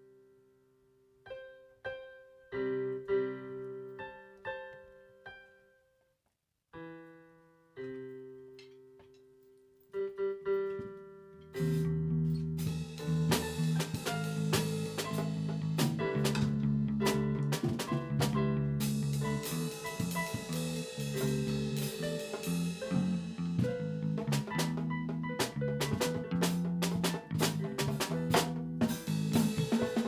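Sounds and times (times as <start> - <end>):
keyboard playing slow chords: 9.9 - 30.0
drums and band playing: 12.6 - 30.0.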